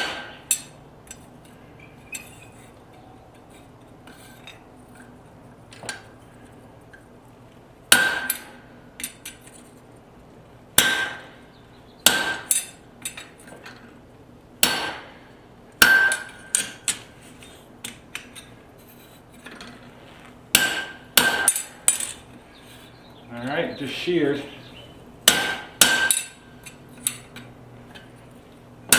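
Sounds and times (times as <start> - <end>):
hammer striking hot steel on anvil: 0.0 - 1.2, 7.9 - 9.4, 10.8 - 11.4, 12.0 - 13.3, 14.6 - 17.0, 20.5 - 22.2, 25.2 - 27.4.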